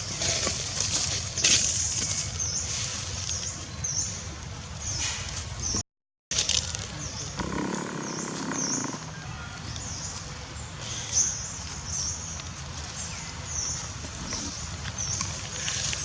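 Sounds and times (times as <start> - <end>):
lower animal sound: 6.7 - 9.8, 14.0 - 14.8.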